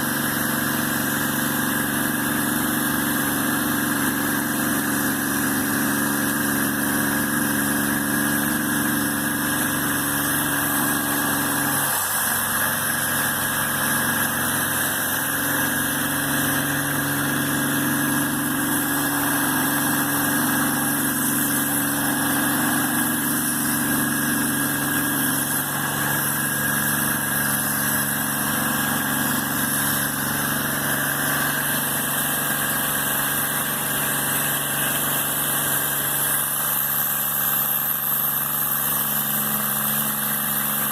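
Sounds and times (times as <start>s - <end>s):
motor-driven machine humming: 0.0s - 40.9s.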